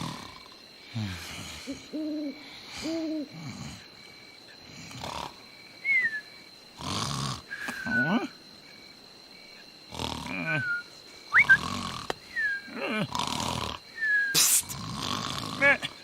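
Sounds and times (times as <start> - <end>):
cartoon snoring: 0.0 - 3.8, 4.9 - 5.4, 6.8 - 8.2, 9.9 - 10.7, 11.3 - 12.1, 12.7 - 16.0
hooting tones: 10.4 - 11.8.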